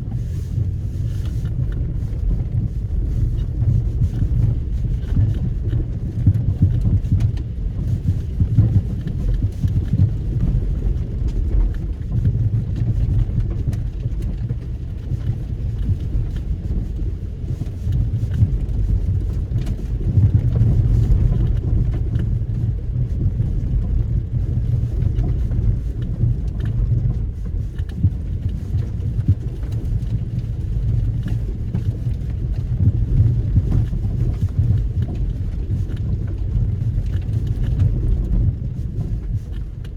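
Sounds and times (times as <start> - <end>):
car engine rumbling: 0.0 - 39.9.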